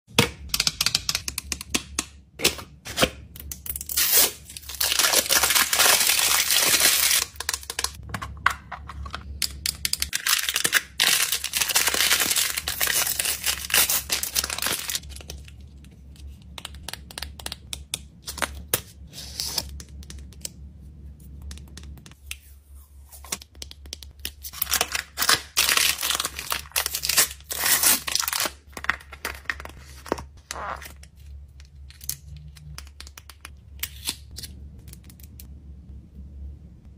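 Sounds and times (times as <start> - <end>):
packaging ripping: 3.9 - 8.0, 10.1 - 15.1, 24.6 - 28.6
packaging rustling: 4.0 - 8.0, 10.1 - 15.3, 24.6 - 30.3.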